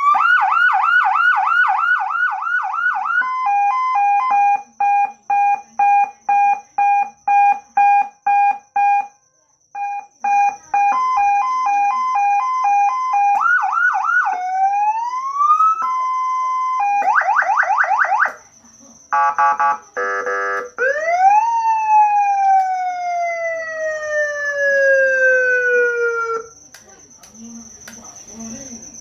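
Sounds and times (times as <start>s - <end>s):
electronic siren through loudspeaker: 0.0s - 9.1s, 9.8s - 18.4s, 19.1s - 26.6s.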